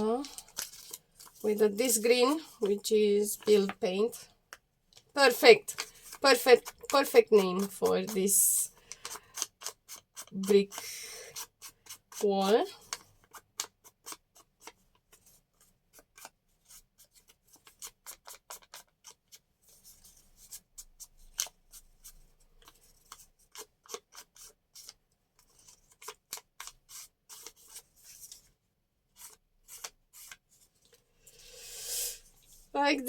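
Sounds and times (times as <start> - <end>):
paper rustling: 0.0 - 3.9
scissors snipping paper: 5.3 - 14.8, 21.3 - 27.8.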